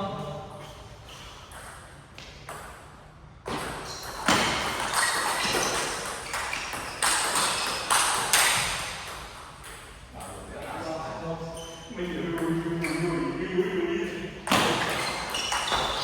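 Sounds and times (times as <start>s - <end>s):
ping pong ball hitting paddles: 1.5s - 10.1s, 14.5s - 16.0s.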